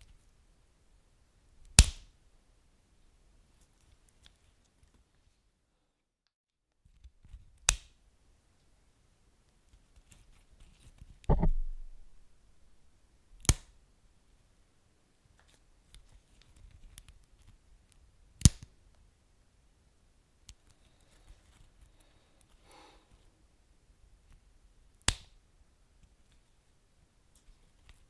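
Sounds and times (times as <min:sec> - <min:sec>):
deep heavy pop: 0:11.3 - 0:12.3
sharp fire pops: 0:11.3 - 0:12.3.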